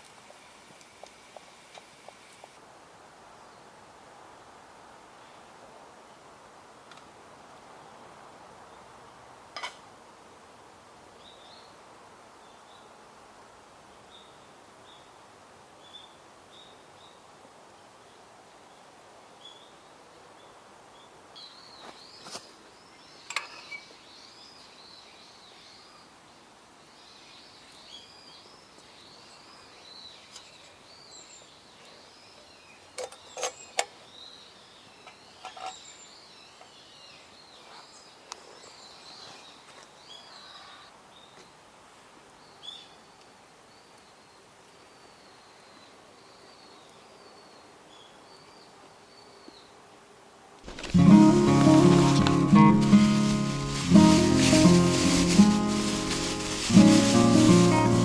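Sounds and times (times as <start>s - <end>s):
small birds chirping: 50.7s - 58.0s.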